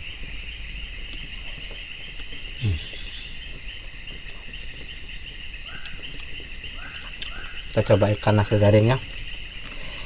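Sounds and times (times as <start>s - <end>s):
crickets chirping: 0.0s - 10.0s
high insect hum: 0.0s - 10.0s.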